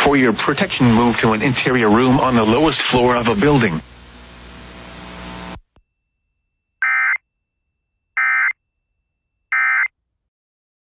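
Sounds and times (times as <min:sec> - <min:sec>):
radio hiss: 0:00.0 - 0:05.7.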